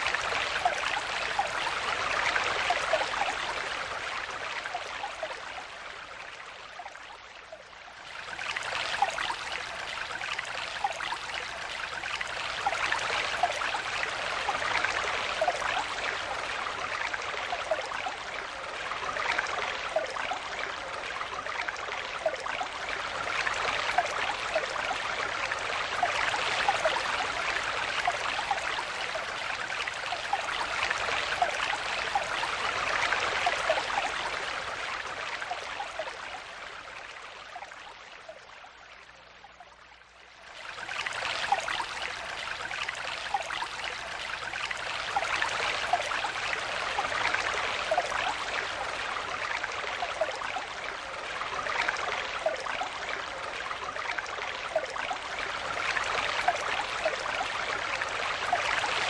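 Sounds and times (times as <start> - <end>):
stream burbling over stones: 0.0 - 59.0.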